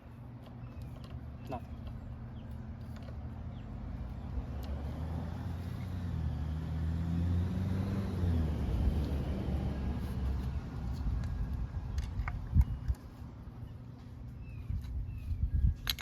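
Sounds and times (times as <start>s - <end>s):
vehicle driving past: 3.5s - 11.0s.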